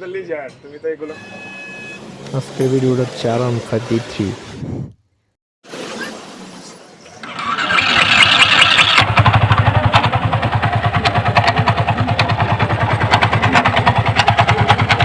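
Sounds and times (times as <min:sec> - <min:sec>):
motorcycle starter cranking: 0:07.0 - 0:15.0
engine ticking clatter: 0:07.3 - 0:15.0
motorcycle engine idling: 0:07.7 - 0:15.0.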